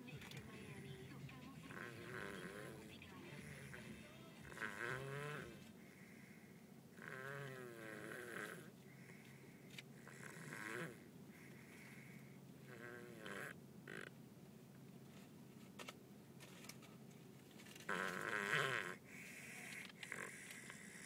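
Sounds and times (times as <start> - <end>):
baby snoring: 1.6 - 9.4, 10.0 - 14.2, 17.8 - 21.0.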